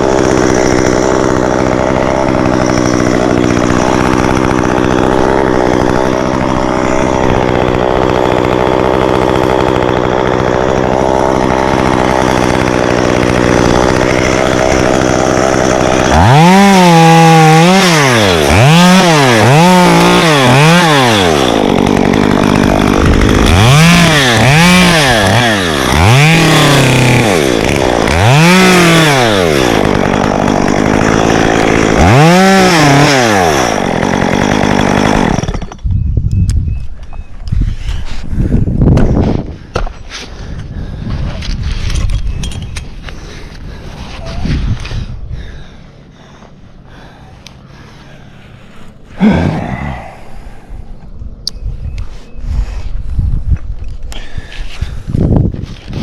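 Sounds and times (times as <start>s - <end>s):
chainsaw engine revving: 0.0s - 35.9s, 43.1s - 50.8s.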